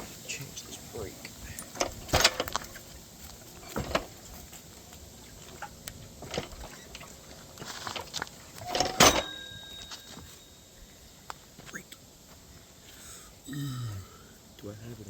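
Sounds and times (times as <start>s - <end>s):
metal parts and tools clattering: 1.6s - 2.9s, 3.6s - 4.2s, 5.6s - 10.5s
sharp ringing knock: 9.0s - 10.7s.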